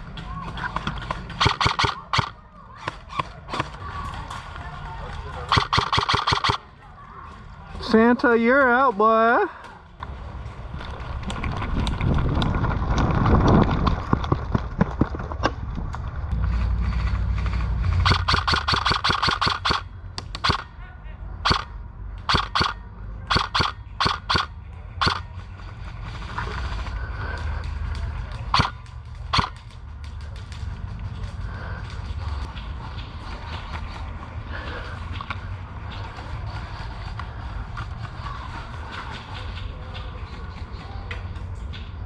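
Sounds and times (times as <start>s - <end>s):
airsoft guns firing: 1.4s - 2.4s, 5.5s - 6.7s, 18.0s - 20.7s, 21.4s - 25.2s, 28.5s - 29.6s.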